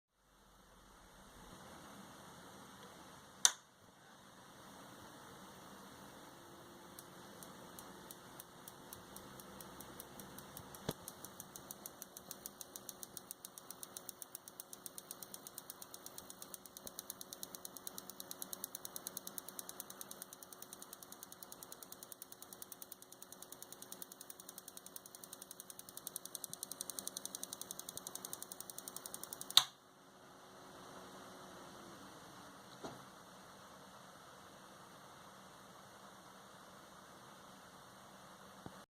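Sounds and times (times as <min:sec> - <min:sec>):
faint steady hum: 0:00.1 - 0:38.9
power supply clicking: 0:06.9 - 0:29.8.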